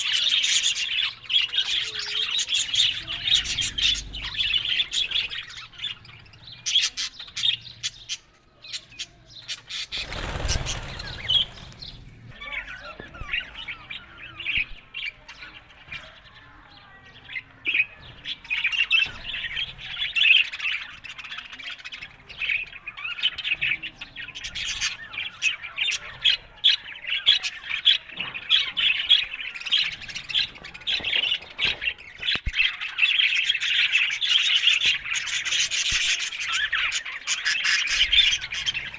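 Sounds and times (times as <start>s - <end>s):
budgerigars chattering: 18.6s - 38.9s.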